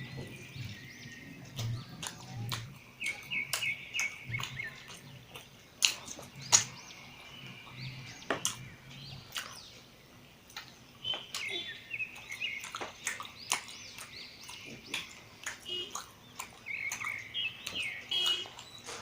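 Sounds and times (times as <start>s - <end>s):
wet chewing: 0.0s - 9.8s, 10.4s - 19.0s
lip-smacking clicks: 1.5s - 6.8s, 8.4s - 8.7s, 10.5s - 18.8s.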